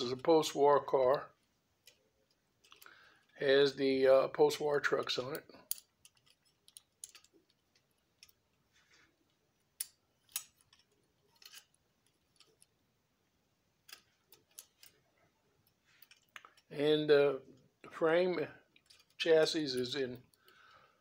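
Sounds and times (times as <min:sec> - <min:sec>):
faint clicks of model train handled: 0:05.2 - 0:12.7, 0:13.8 - 0:15.0, 0:15.6 - 0:16.7.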